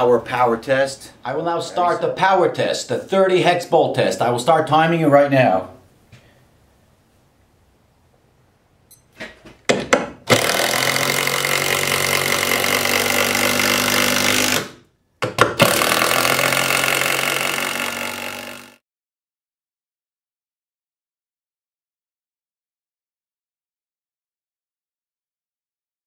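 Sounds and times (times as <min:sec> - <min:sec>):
impact driver driving a bolt: 0:09.7 - 0:18.8.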